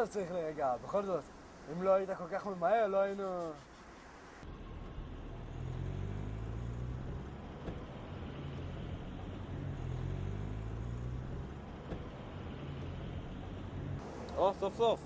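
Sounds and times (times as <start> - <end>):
car engine running at low revs: 4.2 - 15.0.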